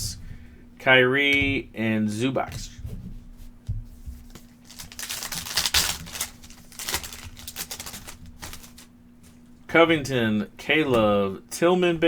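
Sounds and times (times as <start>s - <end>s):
faint steady hum: 0.0s - 12.0s
trading cards clicking and rustling: 4.3s - 8.9s
cards crinkling: 4.3s - 9.4s.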